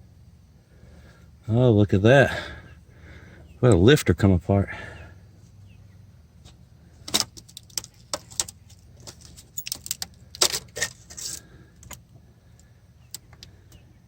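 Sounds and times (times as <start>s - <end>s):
metal parts clinking: 7.1s - 12.0s.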